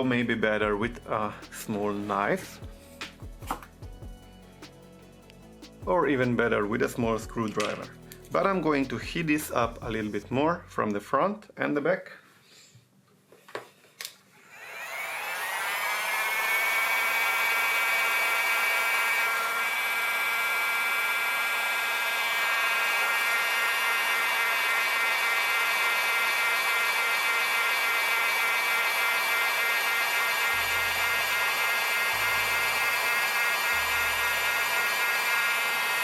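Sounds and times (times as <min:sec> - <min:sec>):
heat gun fan whining: 0:04.6 - 0:10.2, 0:14.0 - 0:36.0.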